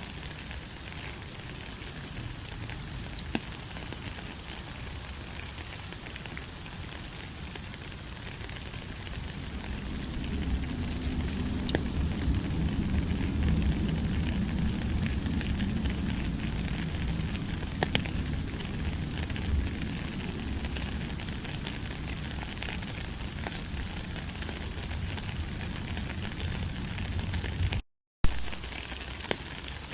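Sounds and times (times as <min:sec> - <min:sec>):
steady rain falling: 0:00.0 - 0:29.9
low rumble: 0:09.2 - 0:22.6.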